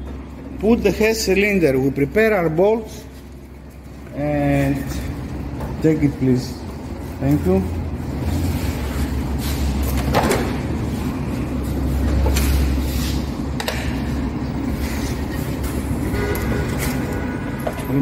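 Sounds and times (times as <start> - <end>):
low workshop rumble: 0.0 - 18.0
knocks and clicks of parts handled: 13.6 - 14.0.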